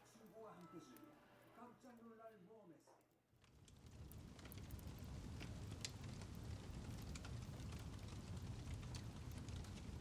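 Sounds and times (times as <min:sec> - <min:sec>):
wood fire crackling: 0:03.3 - 0:10.0.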